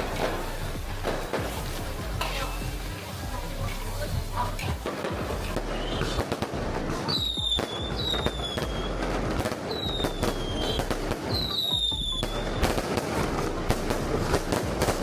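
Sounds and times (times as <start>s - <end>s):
firecrackers popping: 0.0s - 15.0s
falling whistles: 9.7s - 12.4s.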